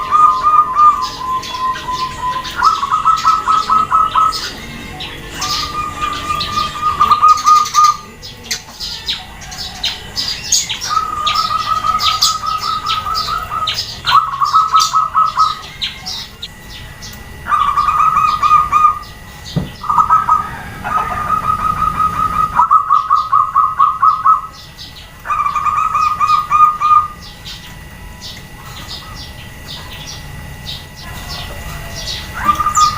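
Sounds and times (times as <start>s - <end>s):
doves cooing: 0.0s - 32.9s
small birds chirping: 0.0s - 32.9s.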